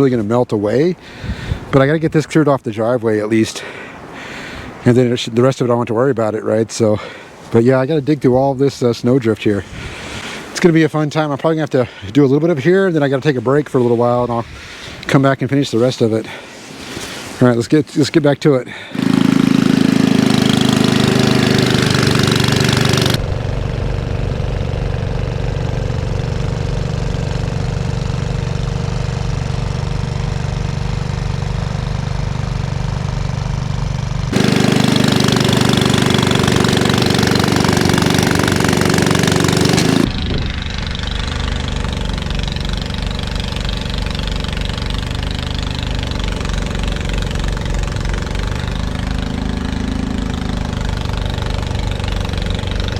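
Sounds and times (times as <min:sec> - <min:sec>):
snowblower engine running under load: 0:19.0 - 0:52.9.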